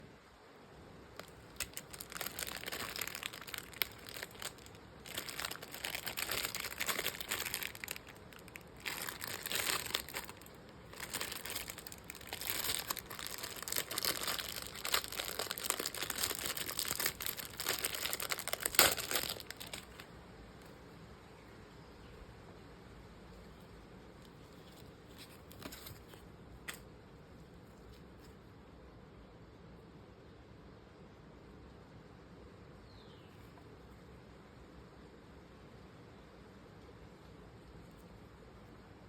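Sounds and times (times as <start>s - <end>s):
plastic packaging crinkling: 1.2s - 20.1s, 24.3s - 26.8s.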